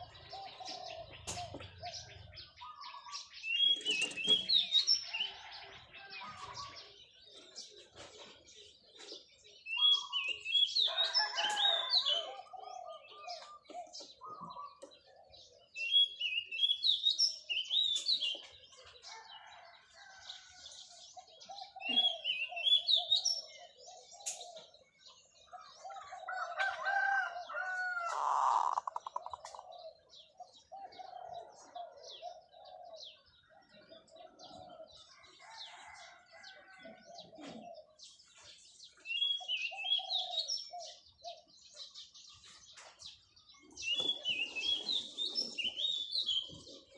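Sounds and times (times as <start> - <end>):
dove cooing staccato: 0.0 - 3.1, 12.2 - 15.7, 21.1 - 24.9, 28.0 - 38.0, 43.8 - 46.9
high-pitched bird chirping: 28.1 - 29.6.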